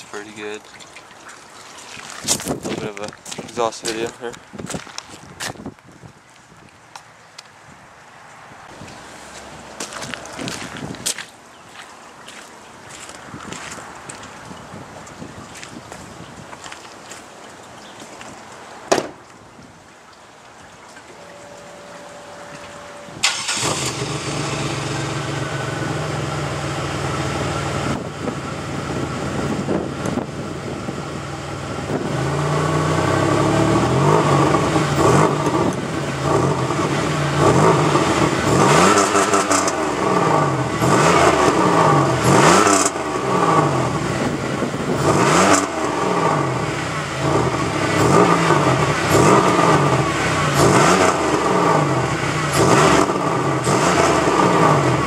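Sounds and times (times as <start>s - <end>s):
car engine idling and revving: 21.2s - 55.0s.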